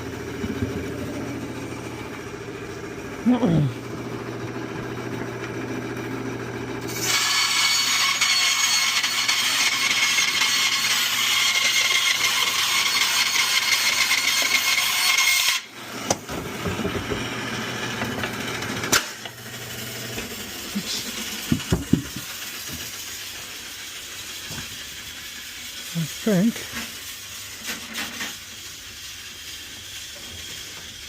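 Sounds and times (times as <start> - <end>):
bandsaw motor humming: 0.0 - 27.0
bandsaw cutting metal: 6.9 - 22.8.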